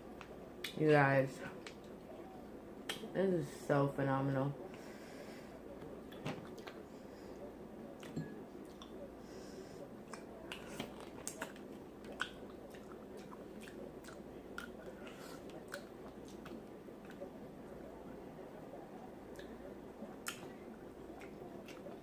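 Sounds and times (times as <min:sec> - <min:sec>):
lip smacking: 0:10.1 - 0:17.3, 0:19.3 - 0:22.0
wet chewing: 0:10.1 - 0:17.3, 0:20.2 - 0:22.0.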